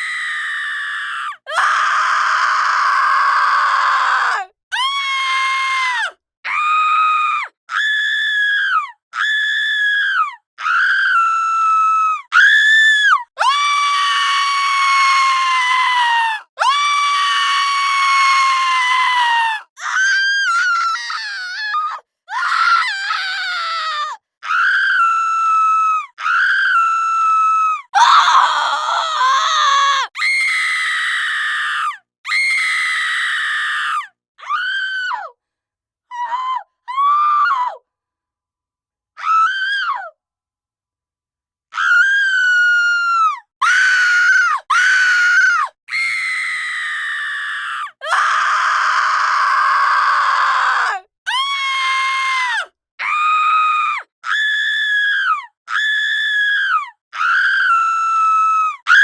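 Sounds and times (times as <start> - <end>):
women screaming: 28.0 - 31.6.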